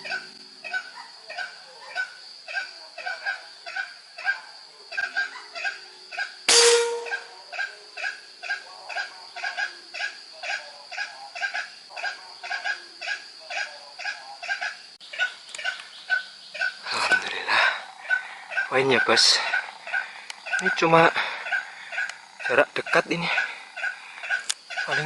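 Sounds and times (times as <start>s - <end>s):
rhythmic animal or insect calls: 0.0s - 25.0s
constant high drone: 6.5s - 7.4s.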